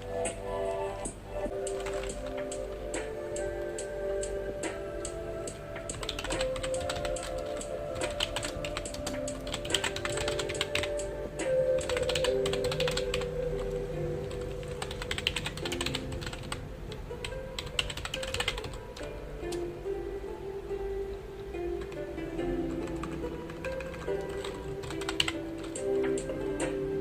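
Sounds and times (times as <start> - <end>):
soft background music: 0.0 - 27.0
keyboard typing: 1.5 - 16.6, 17.2 - 19.1, 22.8 - 26.8.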